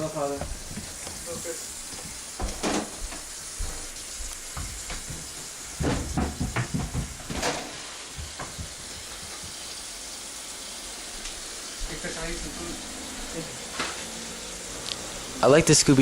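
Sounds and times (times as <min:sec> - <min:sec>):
steady hiss: 0:00.0 - 0:16.0
soft knocks and thuds: 0:00.4 - 0:03.8, 0:04.5 - 0:07.6.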